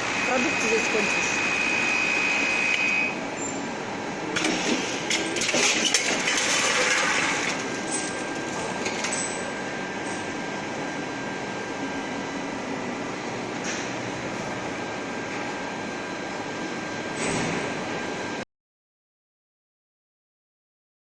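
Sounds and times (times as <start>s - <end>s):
packing machine running: 0.0s - 11.1s.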